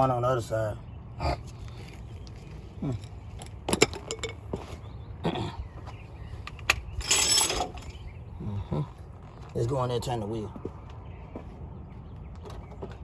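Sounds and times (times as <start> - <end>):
tools clinking against metal: 3.0 - 4.4, 6.4 - 8.0.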